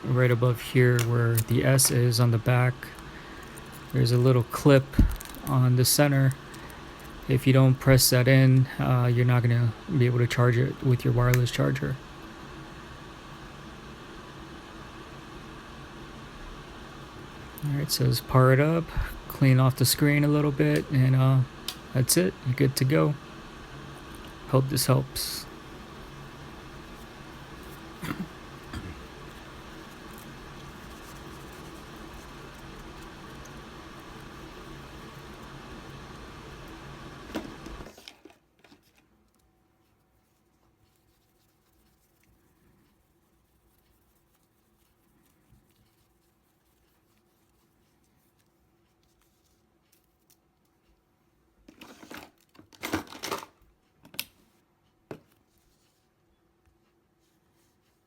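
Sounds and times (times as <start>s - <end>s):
room hum and hiss: 0.0s - 58.0s
rustling and scraping: 24.0s - 36.0s, 51.7s - 53.3s.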